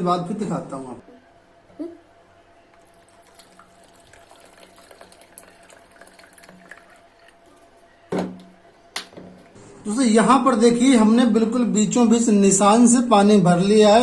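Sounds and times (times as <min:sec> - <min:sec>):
water pouring into plastic container: 0:02.8 - 0:07.7.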